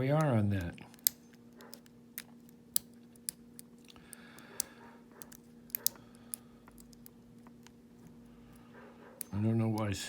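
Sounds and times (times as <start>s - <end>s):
steady low hum: 0.0s - 10.0s
lock pick metallic clicks: 0.1s - 7.8s.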